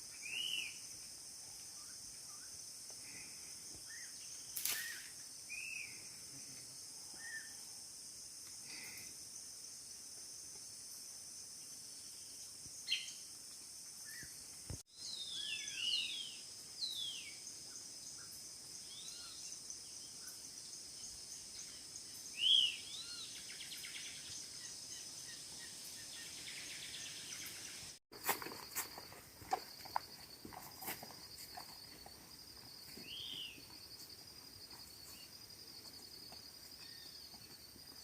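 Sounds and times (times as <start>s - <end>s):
insect chorus: 0.0s - 38.0s.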